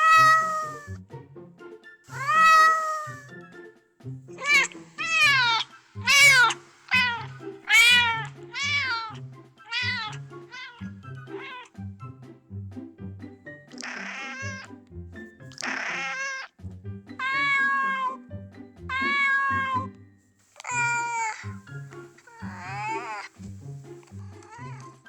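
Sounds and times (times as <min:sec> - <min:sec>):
cats meowing: 0:00.0 - 0:00.9, 0:02.1 - 0:03.3, 0:04.4 - 0:11.7, 0:13.8 - 0:14.7, 0:15.6 - 0:16.6, 0:17.2 - 0:18.2, 0:18.9 - 0:20.0, 0:20.6 - 0:21.6, 0:22.2 - 0:23.4, 0:24.1 - 0:25.0
background music: 0:00.0 - 0:25.0.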